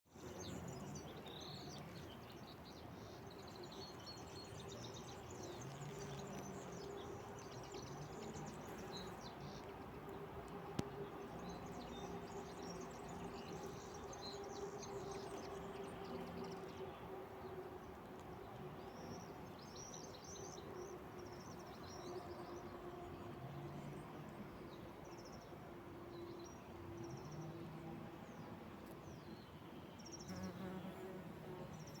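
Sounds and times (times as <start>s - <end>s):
small birds chirping: 0.1s - 17.0s, 29.1s - 32.0s
bumblebee buzzing: 30.3s - 31.9s.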